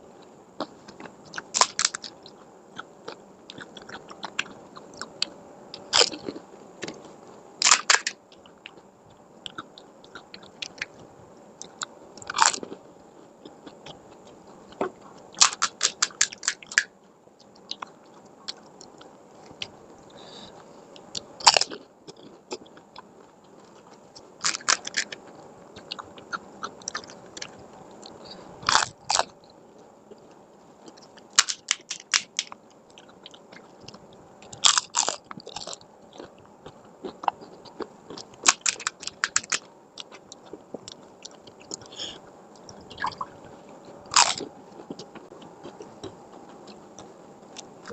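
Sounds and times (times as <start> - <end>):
soft chewing: 0.1 - 47.9
crisp shells crunching: 24.4 - 25.2, 31.3 - 32.6.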